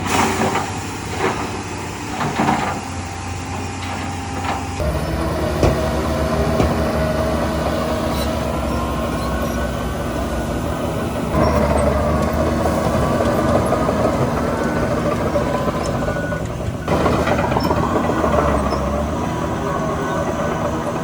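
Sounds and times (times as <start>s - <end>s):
heavy machinery diesel engine: 0.0s - 21.0s
rattling mechanical clatter: 8.1s - 21.0s.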